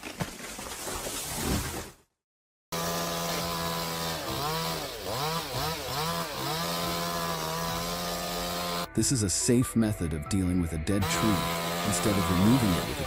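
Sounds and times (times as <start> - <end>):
chainsaw engine running: 2.7 - 8.9, 11.0 - 13.0.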